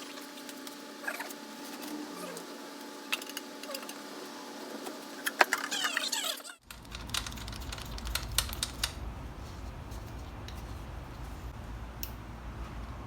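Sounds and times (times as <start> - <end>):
steady hum: 6.6 - 13.0.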